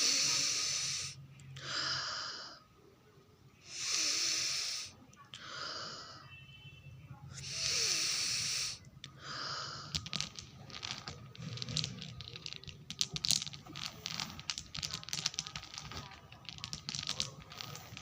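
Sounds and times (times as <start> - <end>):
person sniffing through nose: 3.7 - 6.0, 7.4 - 9.9
small crinkling clicks: 9.9 - 18.0.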